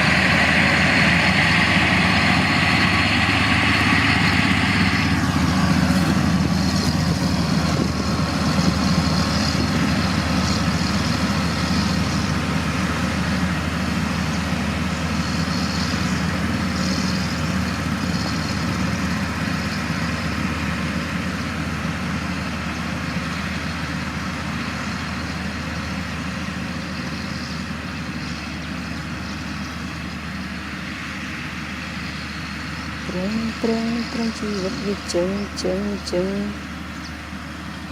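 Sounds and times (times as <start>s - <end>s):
heavy diesel engine running: 0.0s - 37.9s.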